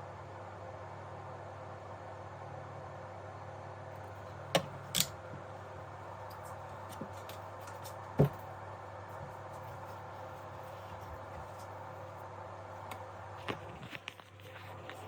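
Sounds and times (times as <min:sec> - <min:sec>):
steady low hum and hiss: 0:00.0 - 0:15.0
tools clicking on workbench: 0:04.6 - 0:05.2.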